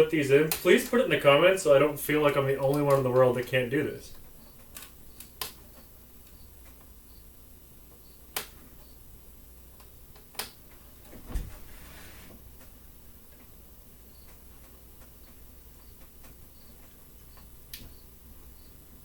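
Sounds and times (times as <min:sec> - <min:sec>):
sharp plastic clicks: 0:00.5 - 0:01.0, 0:02.6 - 0:03.5, 0:04.2 - 0:06.9, 0:09.8 - 0:10.6
rustling: 0:10.7 - 0:12.8.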